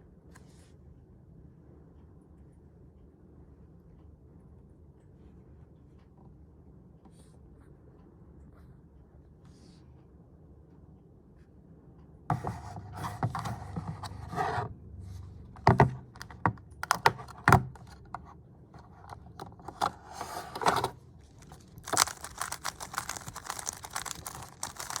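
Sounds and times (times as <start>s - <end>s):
packaging rustling: 15.6s - 18.2s, 18.8s - 25.0s.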